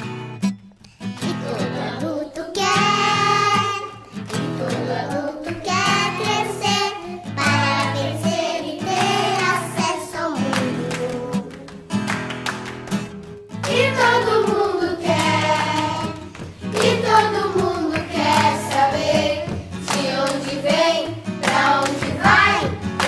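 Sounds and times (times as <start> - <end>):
strummed acoustic guitar: 0.0 - 23.0
person singing: 1.2 - 11.8.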